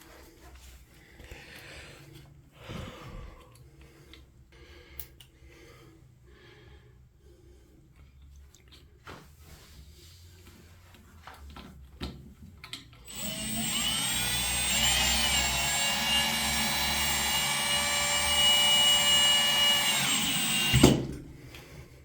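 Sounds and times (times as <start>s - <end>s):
cordless drill driving a screw: 13.0s - 21.1s.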